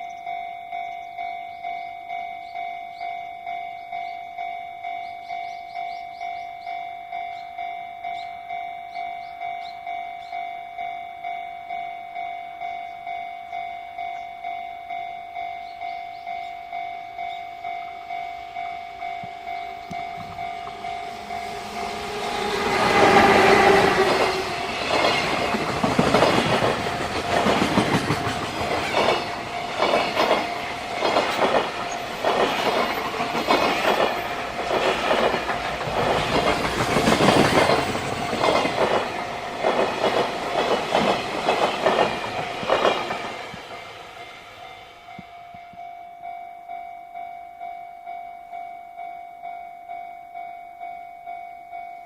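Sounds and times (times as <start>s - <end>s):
level crossing warning bell: 0.0s - 52.0s
freight train wheels clattering: 18.5s - 44.6s.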